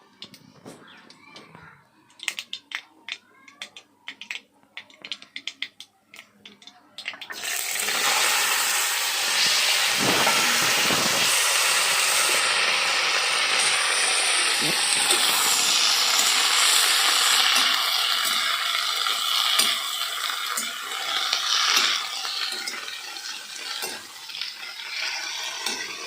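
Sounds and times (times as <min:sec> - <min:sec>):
sharp clicks and pops: 0:00.1 - 0:07.4, 0:14.5 - 0:26.0
food sizzling in hot oil: 0:07.0 - 0:26.0.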